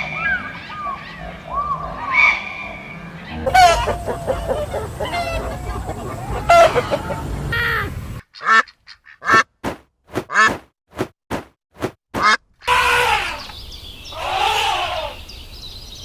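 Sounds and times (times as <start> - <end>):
background noise: 0.0 - 9.4
farmyard fowl calling: 3.3 - 9.4, 12.2 - 13.5
ducks quacking: 3.3 - 9.5.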